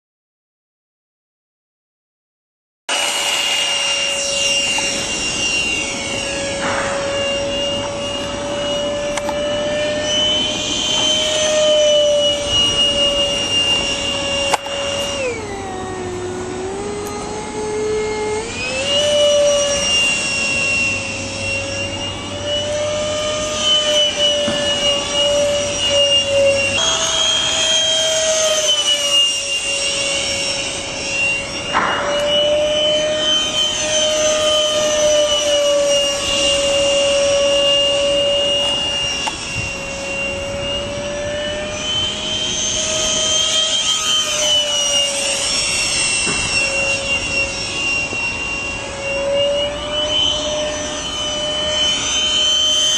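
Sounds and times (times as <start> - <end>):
electric ducted fan whining: 2.9 - 52.9.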